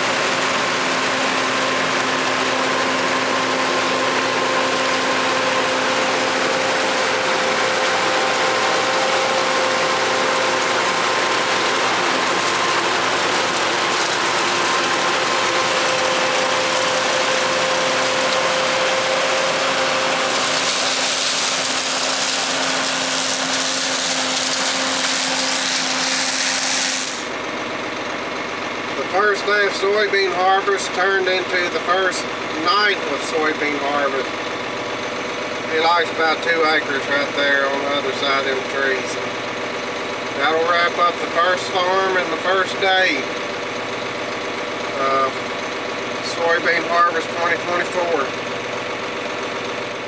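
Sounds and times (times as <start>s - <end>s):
combine harvester clattering: 0.0s - 50.0s.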